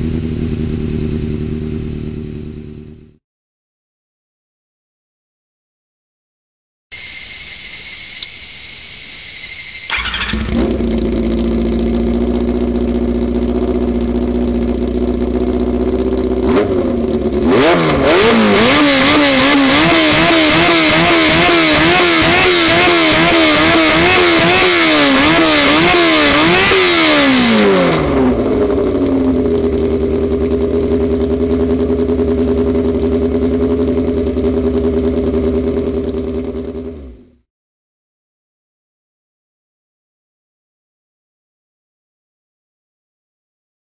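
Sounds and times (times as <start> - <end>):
motorcycle engine idling: 0.0 - 3.2, 9.8 - 37.4
motorcycle engine revving: 0.0 - 3.2, 9.8 - 37.5
engine starter cranking: 9.4 - 11.4.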